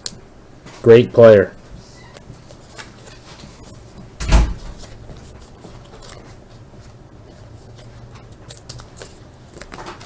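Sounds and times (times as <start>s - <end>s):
trading cards rustling and clicking: 4.7s - 10.0s.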